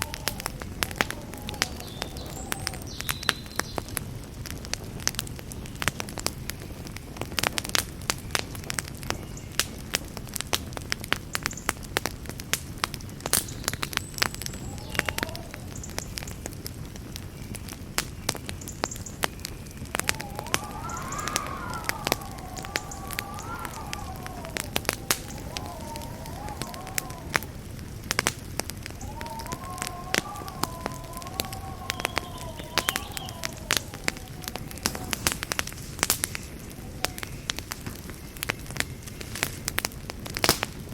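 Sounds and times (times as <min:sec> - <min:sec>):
campfire crackling and popping: 0:00.0 - 0:40.9
wavering whistle: 0:14.4 - 0:15.7, 0:19.7 - 0:27.7, 0:28.9 - 0:35.6.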